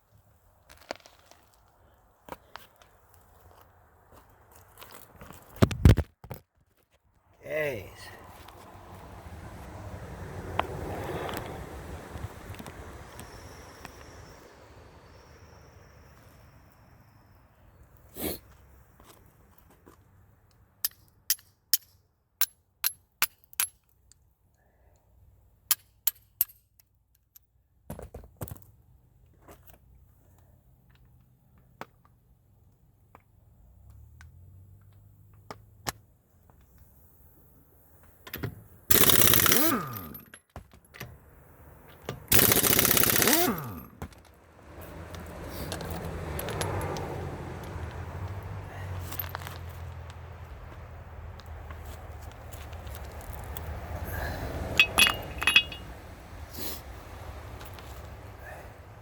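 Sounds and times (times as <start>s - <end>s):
impact wrench hammering: 38.9s - 40.2s, 42.3s - 43.9s, 54.8s - 55.8s.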